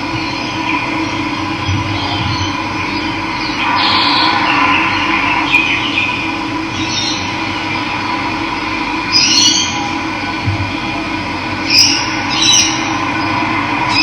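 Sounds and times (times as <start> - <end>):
birds chirping: 0.2 - 7.9, 11.6 - 14.0.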